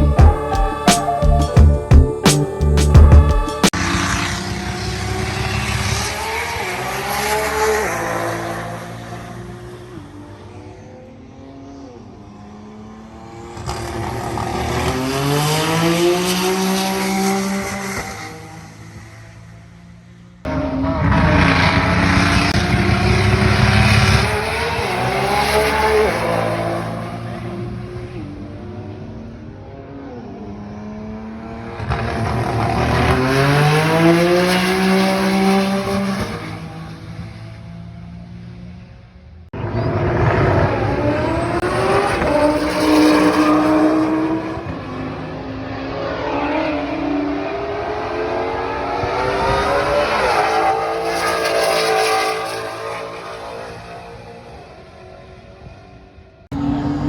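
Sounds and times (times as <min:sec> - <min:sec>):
race car accelerating hard: 0:03.7 - 0:57.0.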